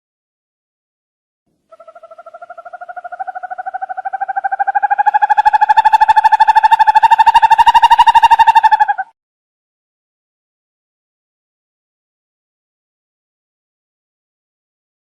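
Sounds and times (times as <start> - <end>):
owl trilling: 1.7 - 9.1.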